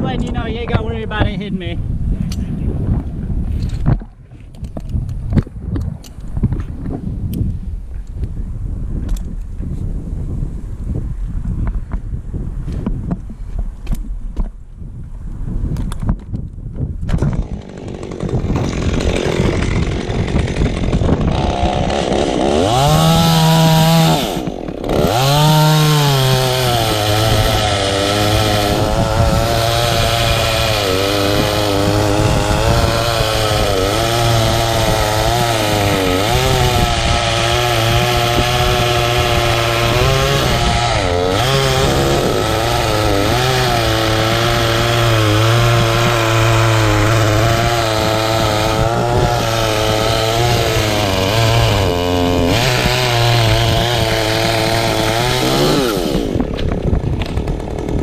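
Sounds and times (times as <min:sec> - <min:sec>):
wind noise: 0:00.0 - 0:58.0
chainsaw cutting wood: 0:17.0 - 0:58.0.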